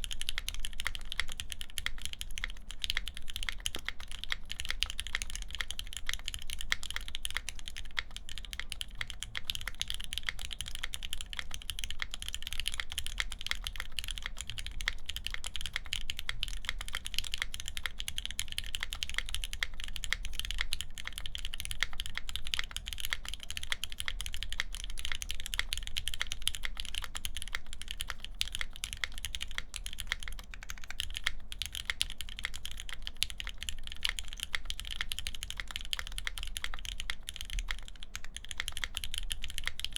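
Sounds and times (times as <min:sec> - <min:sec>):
fast typing on mechanical keyboard: 0:00.0 - 0:39.9.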